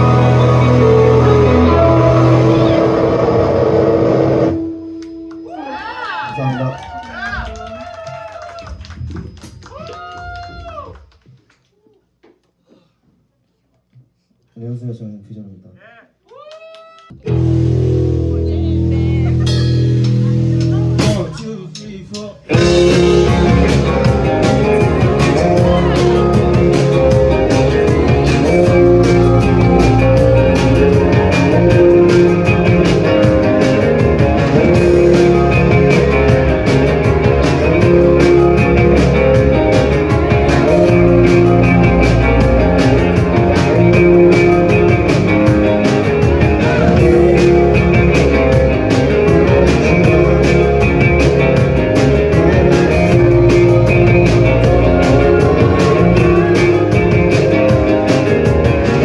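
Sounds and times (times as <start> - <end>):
drum kit beat: 0.0 - 4.5, 17.2 - 59.0
guitars: 0.0 - 5.5, 17.2 - 59.0.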